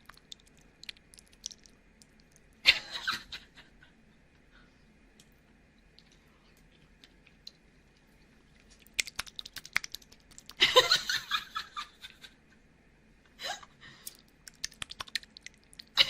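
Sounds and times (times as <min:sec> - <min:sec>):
jelly squelching: 0:00.0 - 0:02.6, 0:05.9 - 0:10.6, 0:14.0 - 0:16.0
wet clicks of jelly eating: 0:00.0 - 0:02.6, 0:05.2 - 0:10.6, 0:14.0 - 0:16.0.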